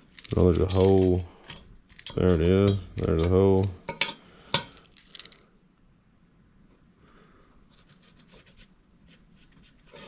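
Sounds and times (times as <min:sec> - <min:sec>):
marking tool scratching a plate: 0:07.7 - 0:10.0.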